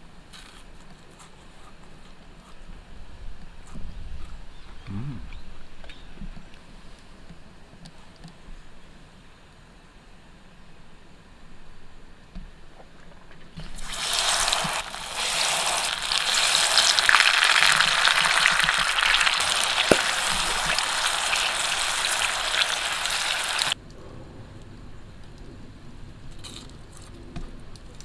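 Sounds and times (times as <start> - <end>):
food sizzling in a pan: 13.6 - 23.8.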